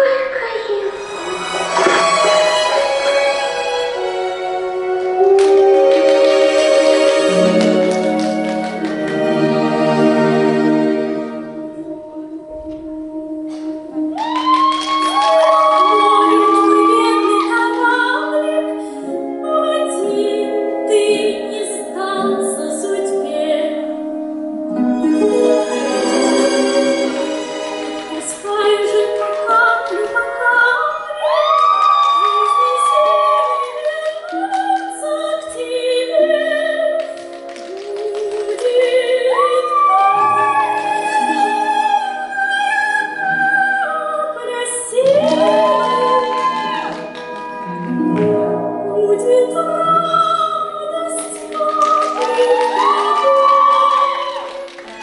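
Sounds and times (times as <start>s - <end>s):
slow music with held notes: 1.0s - 32.0s, 33.2s - 55.0s
woman singing: 15.0s - 24.0s, 28.2s - 46.9s, 48.8s - 54.6s.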